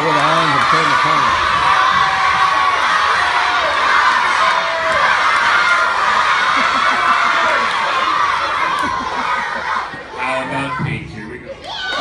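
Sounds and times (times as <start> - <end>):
crowd of children shouting: 0.0 - 12.0.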